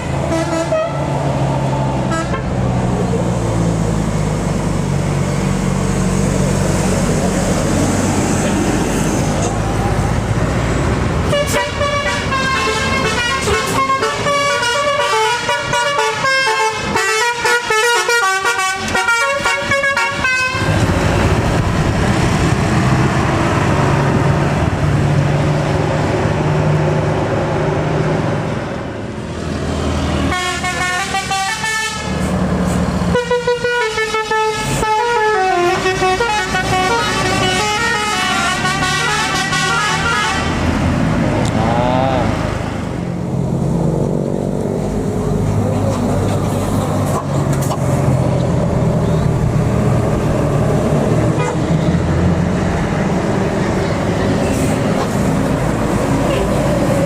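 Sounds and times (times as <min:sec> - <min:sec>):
passing traffic road noise: 0:00.0 - 0:57.0
musical bus air horns: 0:00.1 - 0:01.2, 0:02.1 - 0:02.5, 0:11.3 - 0:20.8, 0:30.2 - 0:32.3, 0:33.1 - 0:40.8, 0:51.3 - 0:51.8
engine drone: 0:34.2 - 0:57.0.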